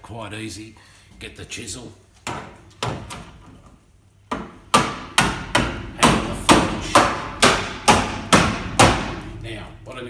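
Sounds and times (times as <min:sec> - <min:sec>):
hammer striking chisel: 0:04.3 - 0:09.4.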